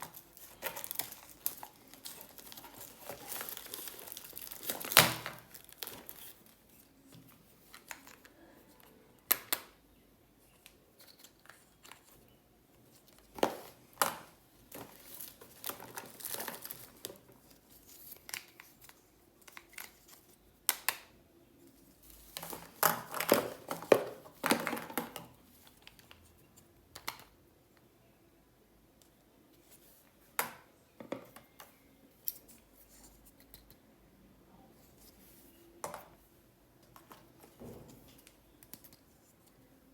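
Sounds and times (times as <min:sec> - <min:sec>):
plastic packaging crinkling: 0:00.0 - 0:08.4, 0:13.1 - 0:20.1.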